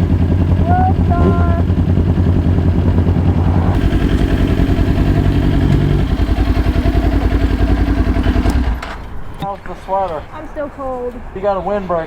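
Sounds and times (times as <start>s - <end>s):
motorcycle engine idling: 0.0s - 9.1s.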